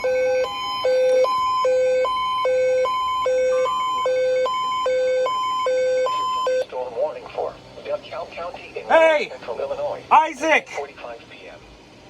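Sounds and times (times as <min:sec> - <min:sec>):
hi-lo electronic alarm tone: 0:00.0 - 0:06.7.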